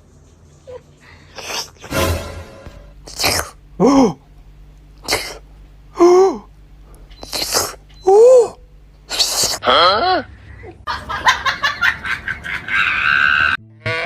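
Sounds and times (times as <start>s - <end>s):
sharp sneezes: 3.0s - 4.2s, 5.0s - 5.4s, 9.1s - 9.7s.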